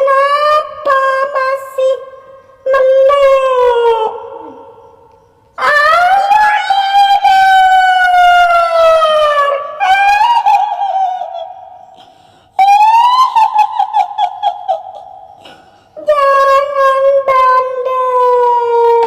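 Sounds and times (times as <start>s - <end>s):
woman wailing: 5.6s - 11.6s, 12.6s - 15.4s
woman cackling: 9.8s - 15.6s.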